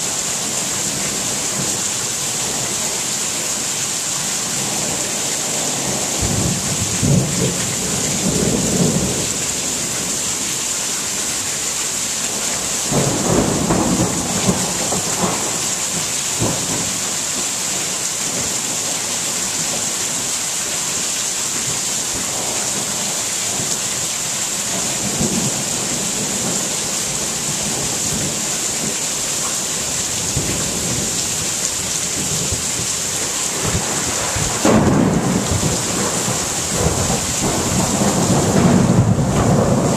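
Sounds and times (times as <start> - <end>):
rain hissing: 0.0 - 39.9
thunder rumbling: 5.6 - 10.0, 12.9 - 16.9, 33.5 - 39.9.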